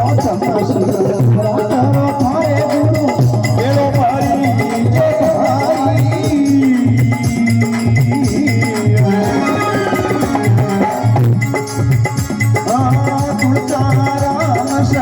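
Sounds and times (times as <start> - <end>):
steady drum beat: 0.0 - 15.0
gliding melody line: 9.0 - 11.7.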